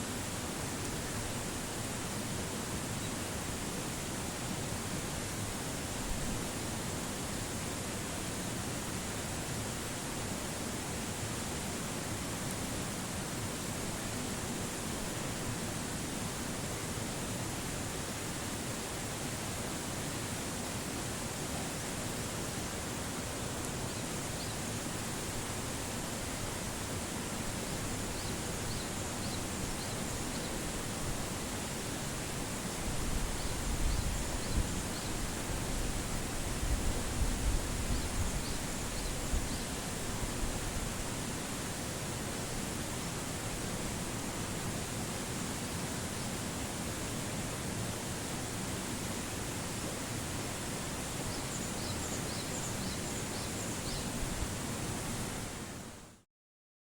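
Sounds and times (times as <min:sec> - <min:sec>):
rushing outdoor noise: 0:00.0 - 0:56.2
wind rumbling on microphone: 0:32.8 - 0:41.0.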